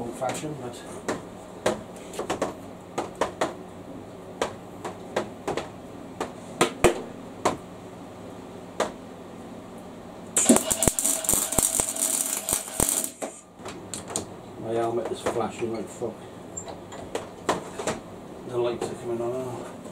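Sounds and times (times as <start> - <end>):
arc welder crackling: 10.2 - 15.0.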